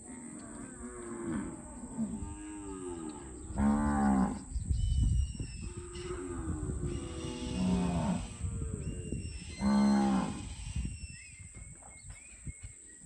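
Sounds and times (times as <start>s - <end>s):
cattle mooing: 0.1s - 4.4s, 5.7s - 8.7s, 9.5s - 10.5s.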